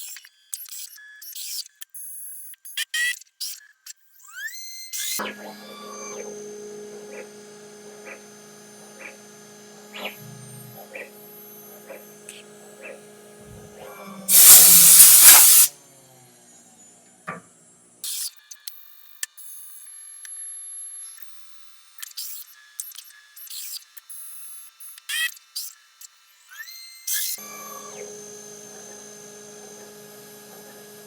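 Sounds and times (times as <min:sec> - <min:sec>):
loud hiss: 0:14.3 - 0:15.7.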